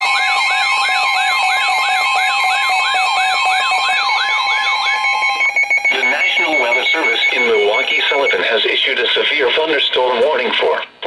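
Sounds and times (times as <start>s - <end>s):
sweeping siren-like alert tone: 0.0s - 8.5s
steady tone: 3.8s - 8.6s.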